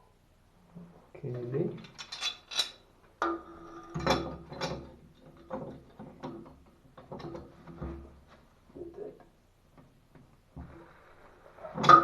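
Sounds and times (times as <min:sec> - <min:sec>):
metal tools clicking and knocking: 0:01.8 - 0:03.4.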